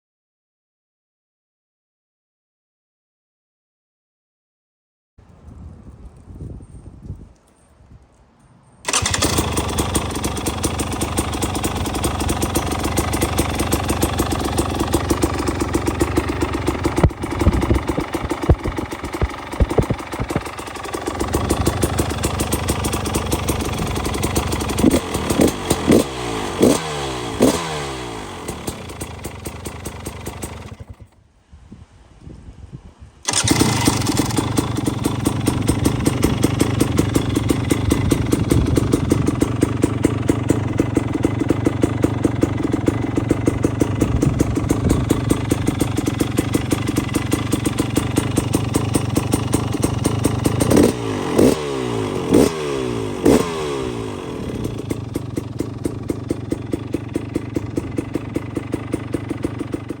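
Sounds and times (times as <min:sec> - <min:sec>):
motorcycle engine idling and revving: 0:08.9 - 0:31.2, 0:33.3 - 1:00.0.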